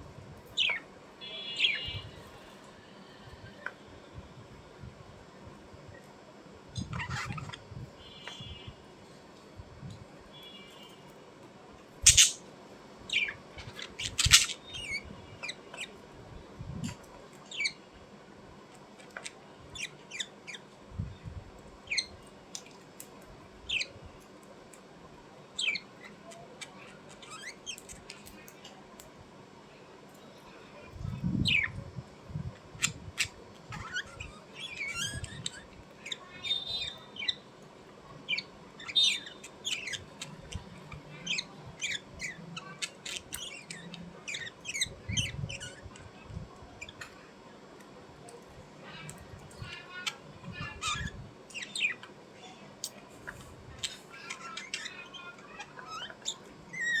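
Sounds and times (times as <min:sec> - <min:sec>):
bird chirping and squawking: 0:00.6 - 0:02.2, 0:06.8 - 0:08.7, 0:12.0 - 0:12.4, 0:13.1 - 0:15.9, 0:32.8 - 0:37.4, 0:38.3 - 0:45.9, 0:49.0 - 0:52.1, 0:53.8 - 0:57.0.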